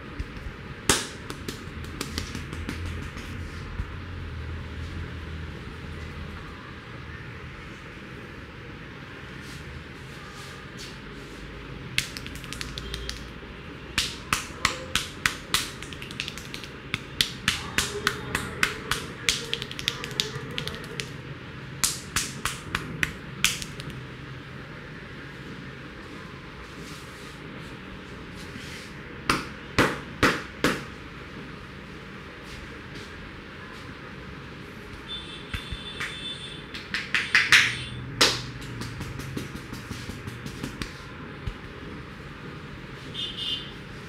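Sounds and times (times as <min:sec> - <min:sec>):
hands slapping and snapping: 0:00.2 - 0:03.3, 0:12.0 - 0:13.3, 0:14.0 - 0:21.2, 0:21.8 - 0:24.0, 0:35.5 - 0:41.6.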